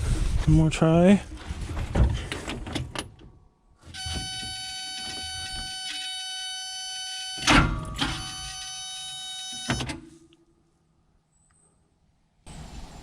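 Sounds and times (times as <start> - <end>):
high-pitched electric starter whine: 4.0 - 9.9.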